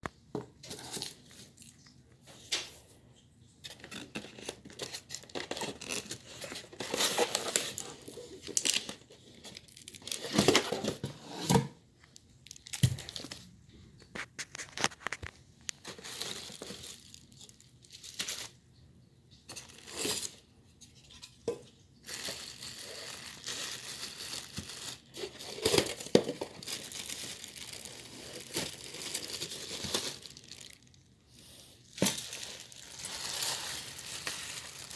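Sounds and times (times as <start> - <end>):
packaging tearing and crinkling: 3.7 - 11.1, 12.4 - 13.5, 14.2 - 18.5, 22.0 - 31.0, 31.9 - 34.9.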